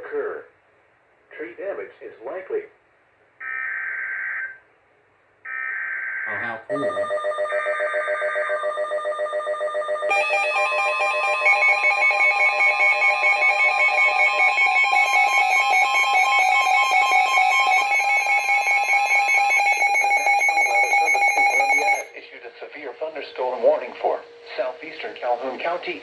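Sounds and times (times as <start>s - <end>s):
steady alarm tone: 5.5s - 26.0s
shrill pulsing alert tones: 6.3s - 22.2s.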